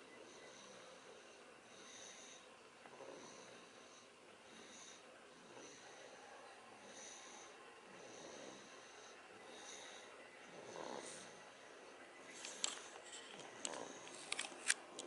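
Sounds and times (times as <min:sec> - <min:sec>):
person snoring with wheeze: 0:00.0 - 0:06.2, 0:06.8 - 0:12.0, 0:13.5 - 0:14.2.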